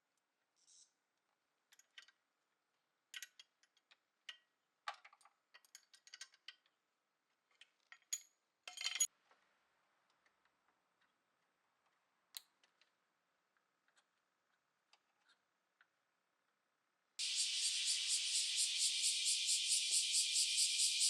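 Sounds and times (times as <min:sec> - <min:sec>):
small metal tools clinking: 0:07.8 - 0:09.1.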